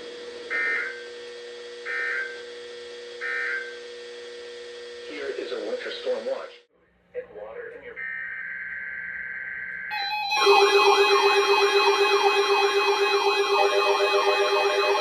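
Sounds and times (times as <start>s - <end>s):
warbling siren alarm: 8.0s - 15.0s
high electronic tone: 9.9s - 15.0s
pulsing low tone: 10.3s - 15.0s.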